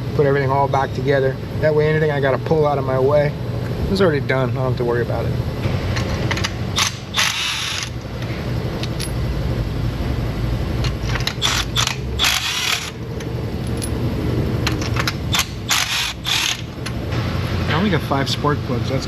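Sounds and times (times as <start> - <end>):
steady low hum: 0.0 - 19.0
metallic tool rattling and clicking: 14.7 - 16.6.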